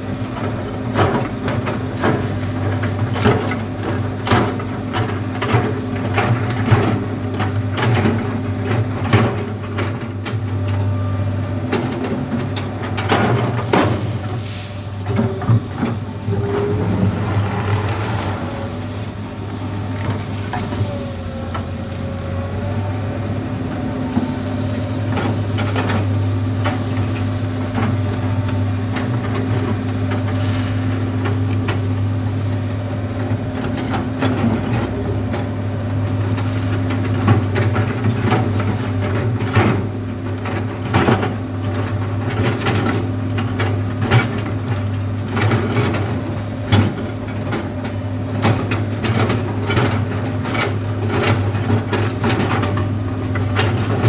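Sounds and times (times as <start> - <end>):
diesel engine humming: 10.4 - 39.0
gravel clattering against steel bucket: 12.9 - 22.3, 24.1 - 32.6.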